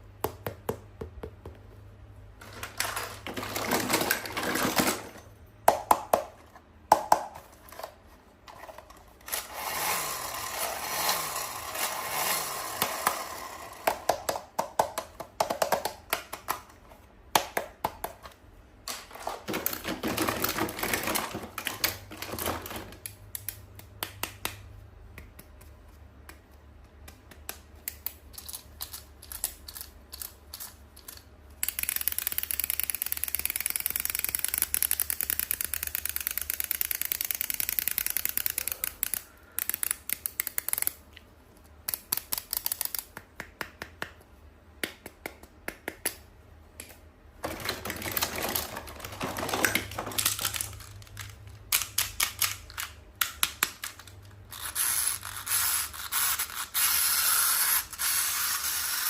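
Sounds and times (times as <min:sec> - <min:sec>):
toy packaging clicks and taps: 0:13.8 - 0:44.2, 0:46.8 - 0:59.0.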